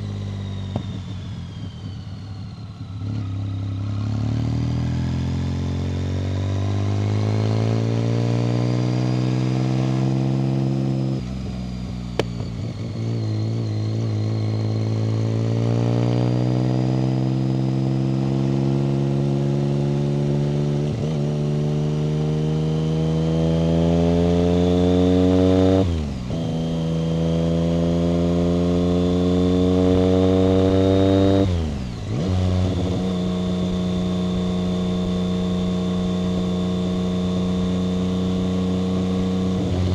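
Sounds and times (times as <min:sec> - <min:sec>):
motorcycle engine accelerating: 0:00.0 - 0:39.9.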